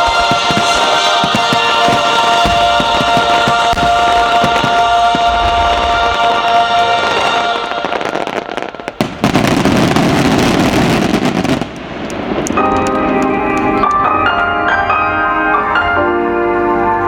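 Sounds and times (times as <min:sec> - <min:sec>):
music with piano-like notes: 0:00.0 - 0:08.7, 0:12.4 - 0:17.0
firework bang: 0:00.0 - 0:12.9
crackling of bursting shells: 0:00.0 - 0:13.0.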